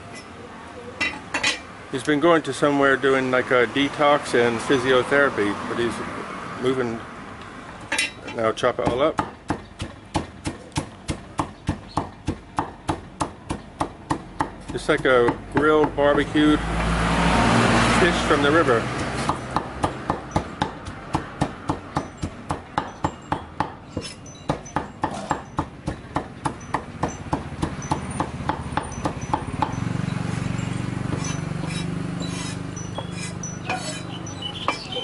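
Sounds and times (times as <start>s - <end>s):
knife chopping on a board: 8.8s - 16.3s, 18.9s - 29.8s, 31.1s - 34.0s.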